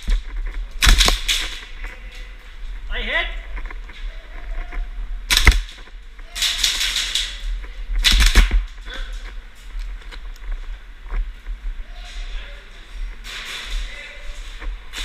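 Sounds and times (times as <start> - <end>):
airsoft guns firing: 0.8 - 1.6, 5.3 - 5.8.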